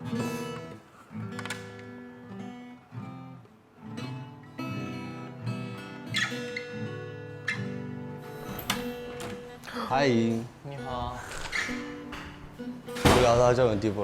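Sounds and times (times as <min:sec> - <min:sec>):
acoustic guitar strummed chords: 0:00.0 - 0:09.6.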